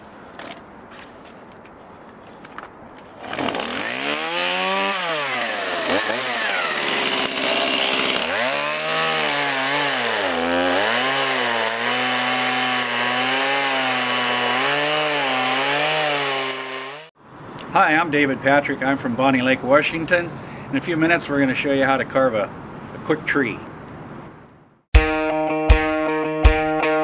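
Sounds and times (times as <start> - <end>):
chainsaw cutting wood: 3.2 - 17.1.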